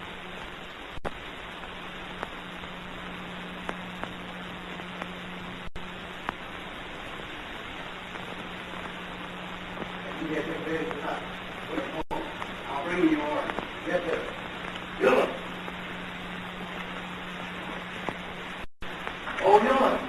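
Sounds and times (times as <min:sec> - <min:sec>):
film soundtrack hiss: 0:00.0 - 0:20.0
low hum: 0:00.0 - 0:20.0
clicks and pops: 0:00.3 - 0:10.0, 0:10.9 - 0:12.7, 0:13.4 - 0:13.8, 0:14.4 - 0:19.4.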